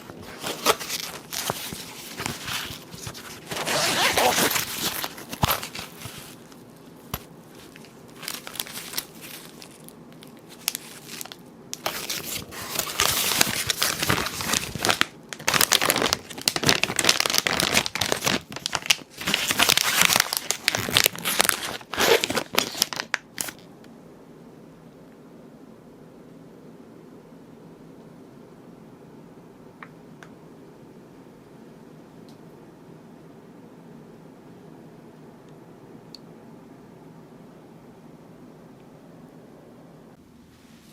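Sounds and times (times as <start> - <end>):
crinkly packaging being torn: 0.0 - 23.6.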